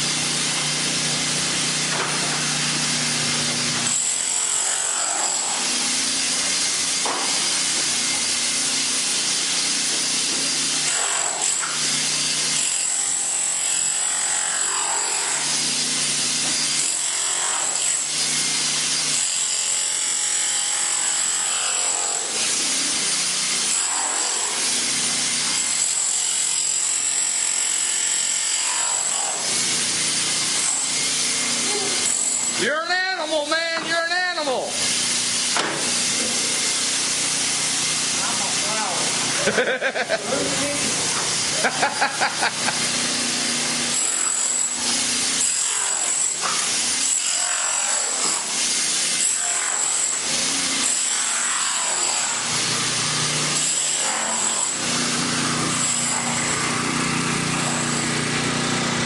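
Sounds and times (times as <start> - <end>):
floor removal tool whining: 0.0 - 59.0
tool ripping up wood flooring: 34.8 - 59.0.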